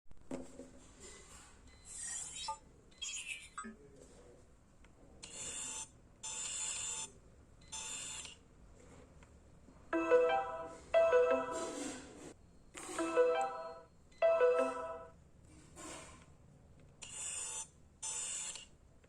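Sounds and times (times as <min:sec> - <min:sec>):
short electronic tones: 0:10.0 - 0:11.8, 0:13.0 - 0:15.1.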